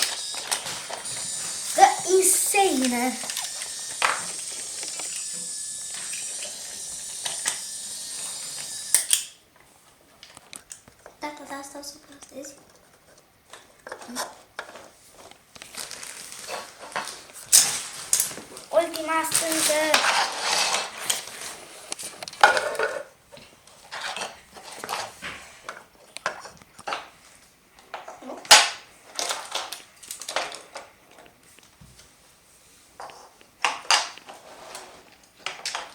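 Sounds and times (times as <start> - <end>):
toy pieces clicking and knocking: 0.0 - 9.3
steady high hiss: 0.0 - 9.4.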